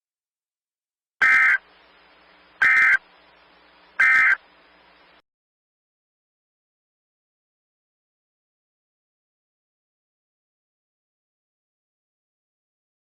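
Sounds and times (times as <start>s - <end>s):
faint hiss: 1.2s - 5.2s.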